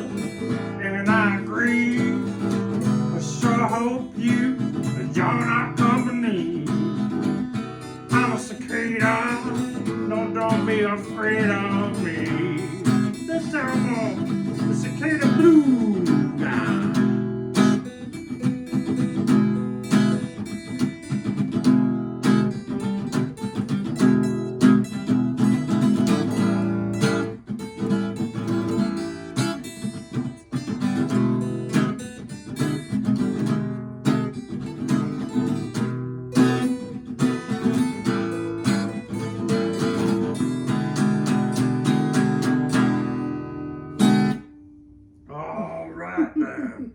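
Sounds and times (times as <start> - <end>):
blues acoustic guitar: 0.0 - 46.9.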